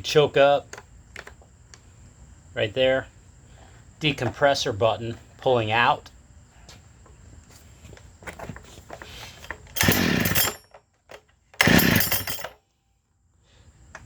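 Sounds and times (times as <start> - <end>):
recoil starter cord pulls: 8.9 - 12.6
engine cranking: 9.4 - 10.6, 11.6 - 12.6.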